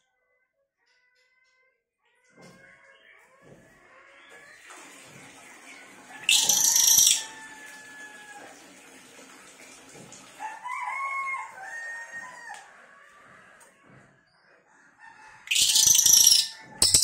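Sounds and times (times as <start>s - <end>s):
rooster crowing: 6.1s - 8.6s, 10.4s - 14.0s, 14.6s - 17.0s.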